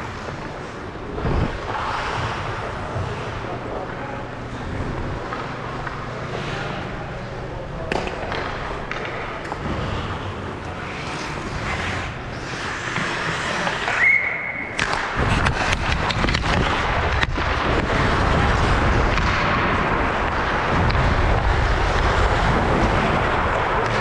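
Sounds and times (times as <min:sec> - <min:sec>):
heavy rumbling noise: 0:00.0 - 0:14.1, 0:14.7 - 0:24.0
sticks and puck clacking: 0:00.0 - 0:21.0, 0:21.8 - 0:24.0
skates scraping on ice: 0:00.0 - 0:24.0.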